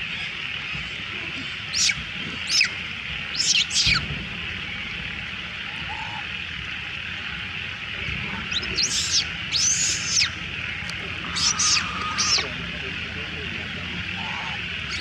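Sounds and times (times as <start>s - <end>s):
young monkey crying squeals: 11.2s - 12.4s.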